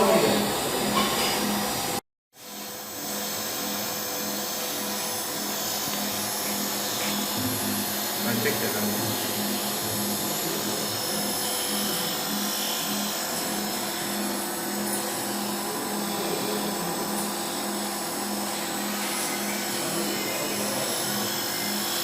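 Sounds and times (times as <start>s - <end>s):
machine whirring: 0.0s - 22.0s.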